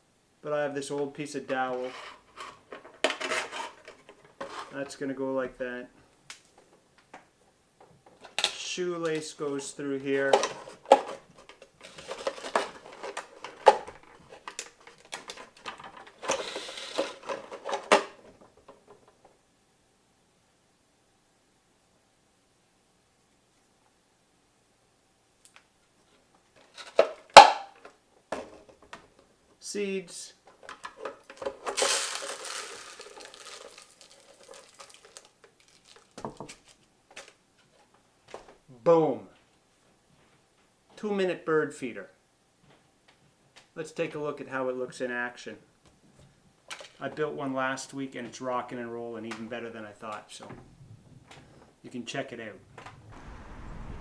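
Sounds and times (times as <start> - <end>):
bird seed pouring into feeder: 31.7 - 36.2.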